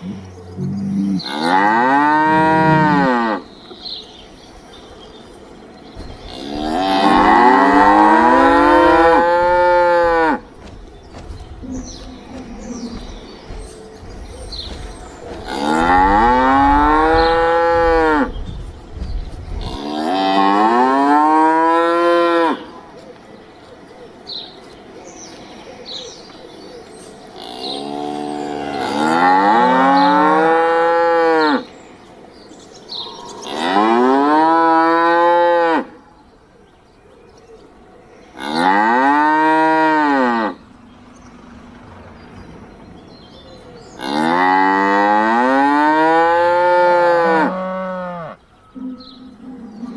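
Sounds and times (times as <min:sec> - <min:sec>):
cow mooing: 0:00.0 - 0:03.5, 0:06.3 - 0:10.5, 0:15.3 - 0:18.3, 0:19.6 - 0:22.7, 0:27.4 - 0:31.7, 0:38.4 - 0:40.7, 0:44.0 - 0:49.9.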